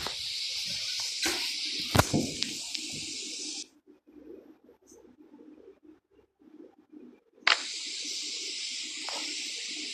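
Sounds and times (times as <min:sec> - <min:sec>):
steady hiss: 0:00.0 - 0:04.3, 0:07.4 - 0:09.9.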